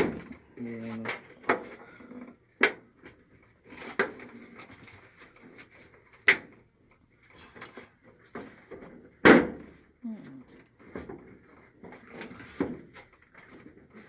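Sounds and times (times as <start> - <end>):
tools and metal clattering: 3.0 - 14.0
sharp knocks on metal panels: 9.2 - 9.8.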